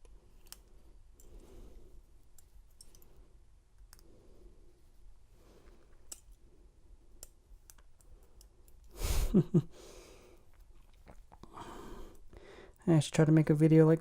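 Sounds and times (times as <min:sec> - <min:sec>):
person sighing: 0:08.9 - 0:10.2, 0:11.4 - 0:12.6.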